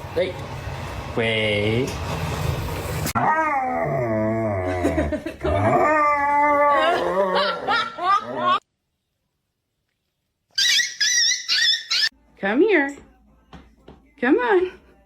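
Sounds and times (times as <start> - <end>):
dog howling: 3.2 - 4.8, 5.5 - 8.6
dog yipping: 10.5 - 12.1.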